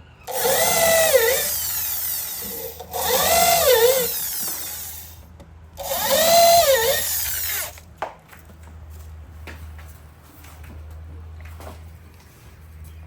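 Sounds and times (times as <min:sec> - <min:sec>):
power drill motor whining: 0:00.2 - 0:05.2, 0:05.8 - 0:07.8.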